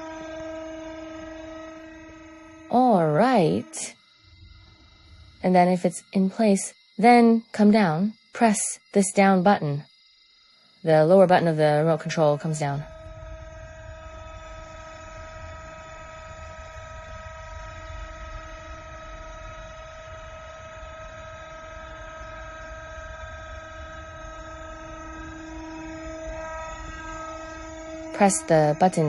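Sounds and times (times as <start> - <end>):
hydraulic pump humming: 0.0 - 3.8, 12.2 - 29.0.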